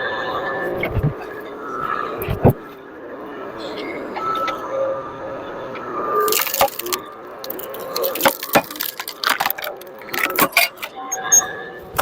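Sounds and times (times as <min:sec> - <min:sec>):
log cracking and splintering: 0:06.3 - 0:10.9.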